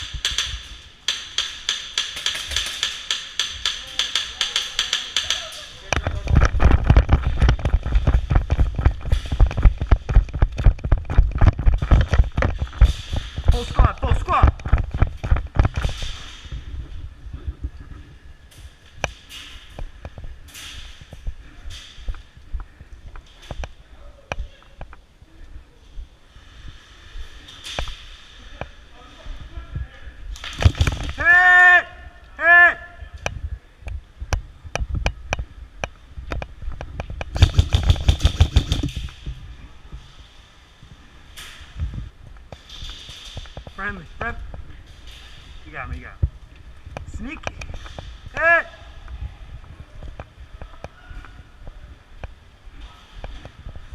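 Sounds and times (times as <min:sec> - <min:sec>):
airsoft gun shots: 0:37.3 - 0:39.1.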